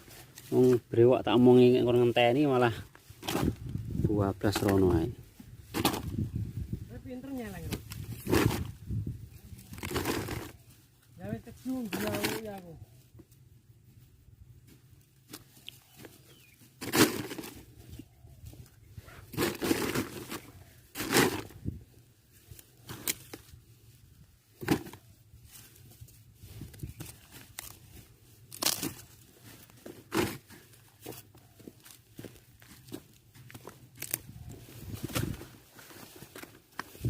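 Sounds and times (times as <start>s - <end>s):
leaves rustling and tearing: 5.6s - 13.0s, 25.4s - 37.0s.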